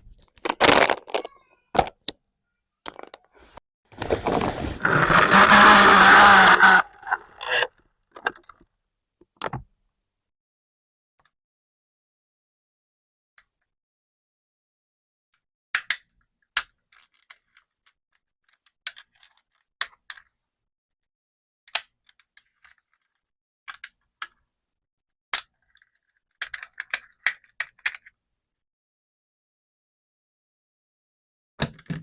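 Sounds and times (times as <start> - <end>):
marbles clicking on a track: 0.5 - 1.4.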